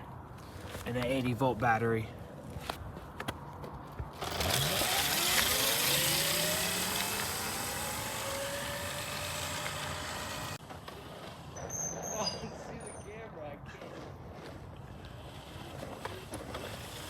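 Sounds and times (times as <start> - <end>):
electric motor whine: 4.2 - 10.6.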